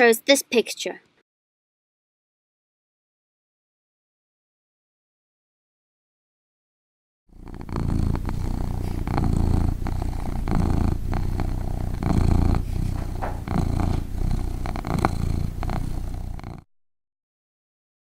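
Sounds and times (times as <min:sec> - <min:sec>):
cat purring: 0:07.3 - 0:16.7.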